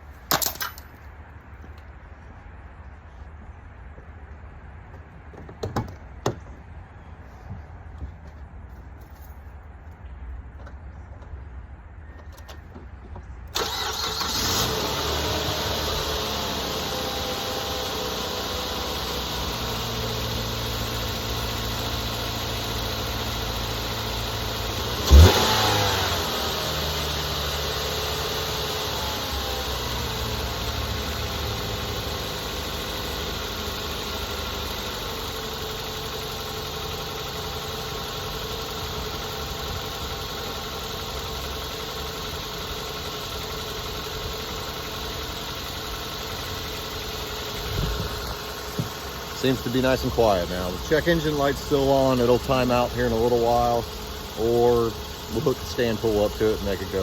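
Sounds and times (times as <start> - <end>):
car engine idling: 13.2 - 57.0.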